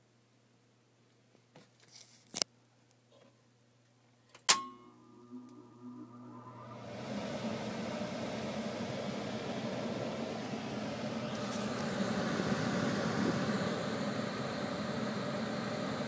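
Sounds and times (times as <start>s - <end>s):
blower humming with rushing air: 4.9s - 16.0s.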